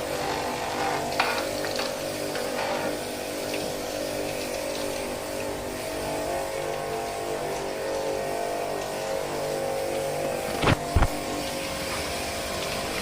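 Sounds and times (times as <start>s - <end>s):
machine motor hum: 0.0s - 13.0s.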